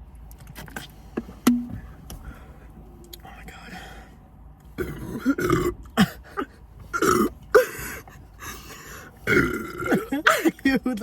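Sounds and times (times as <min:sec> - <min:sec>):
person burping: 0:04.8 - 0:06.2, 0:06.9 - 0:07.7, 0:09.2 - 0:10.4.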